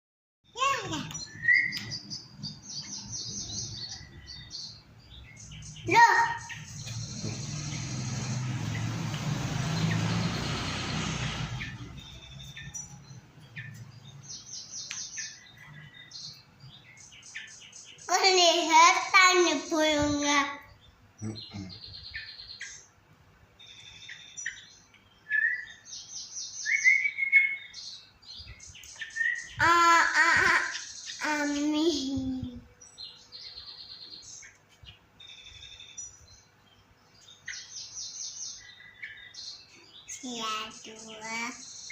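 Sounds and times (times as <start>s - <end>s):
bird chirping high: 0.5s - 22.9s, 23.5s - 41.9s
bulbul chirping and whistling: 1.1s - 4.5s, 25.2s - 27.8s, 28.4s - 29.7s
rushing noise: 7.0s - 12.0s.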